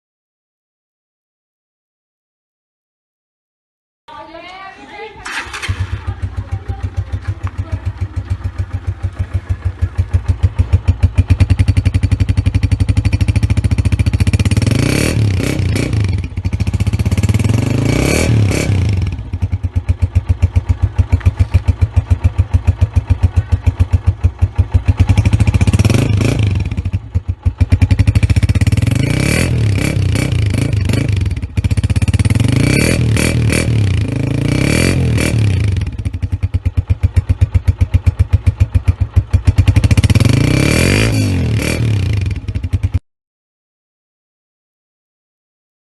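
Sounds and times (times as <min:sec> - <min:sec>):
motorcycle engine revving: 0:05.2 - 0:43.0.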